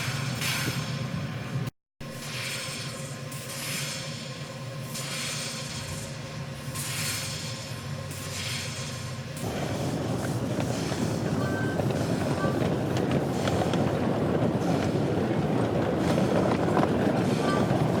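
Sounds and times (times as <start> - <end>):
steam locomotive clattering: 6.7 - 18.0.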